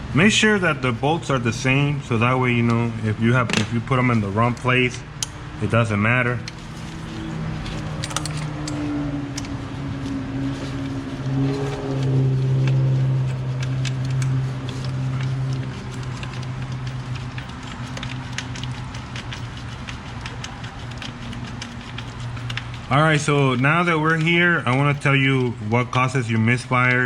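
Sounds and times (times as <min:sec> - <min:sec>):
low engine-like hum: 0:03.8 - 0:27.0
metallic clicks of hand tools: 0:07.7 - 0:09.6.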